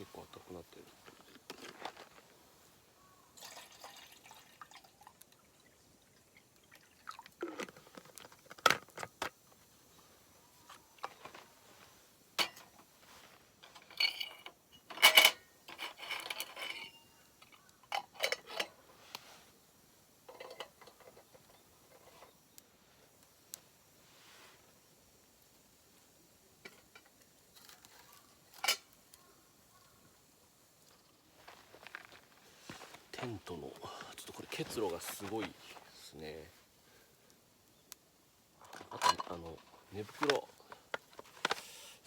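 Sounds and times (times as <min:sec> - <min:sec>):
water pouring: 0:03.4 - 0:07.9
cookware and cups clinking: 0:12.4 - 0:12.8, 0:13.6 - 0:18.8, 0:20.3 - 0:22.3, 0:38.8 - 0:39.4.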